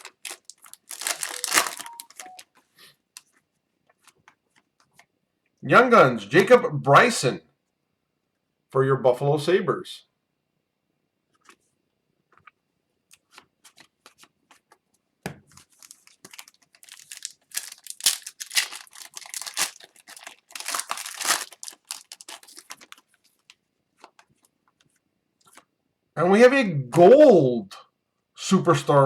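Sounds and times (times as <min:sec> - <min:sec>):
cards clicking: 0:00.0 - 0:02.4
foil wrapper crinkling and tearing: 0:00.0 - 0:02.4, 0:15.6 - 0:24.3.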